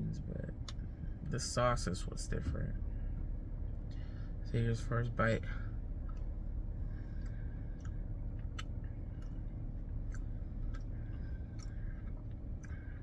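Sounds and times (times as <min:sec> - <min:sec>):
person chewing food: 0:06.0 - 0:13.0.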